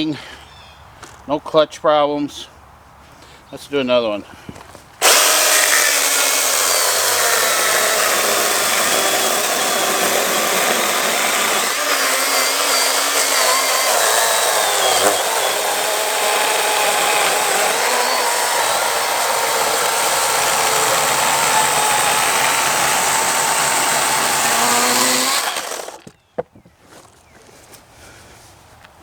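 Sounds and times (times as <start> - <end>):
chainsaw cutting log: 5.0 - 26.1.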